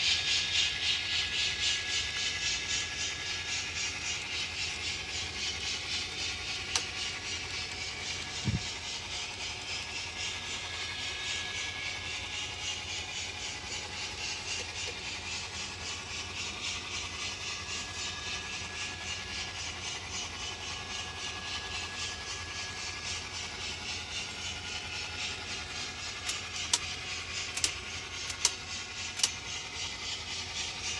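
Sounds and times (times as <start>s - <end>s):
locomotive sound from small speaker: 0.0s - 30.9s
sharp click: 26.3s - 29.4s.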